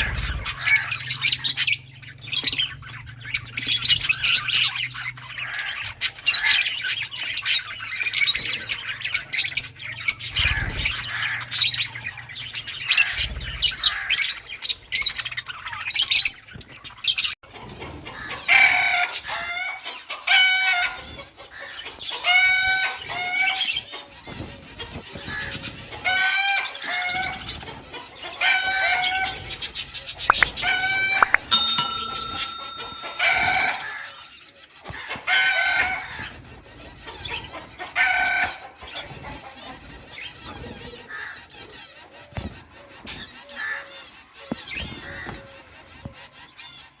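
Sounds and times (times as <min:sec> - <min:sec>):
high thin bird chirping: 0:30.3 - 0:33.8.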